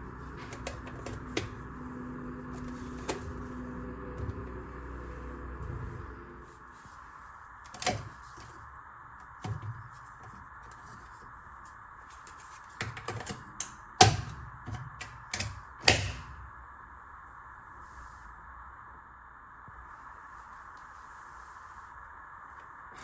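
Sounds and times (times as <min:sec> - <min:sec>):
faint hiss: 0:17.0 - 0:22.9.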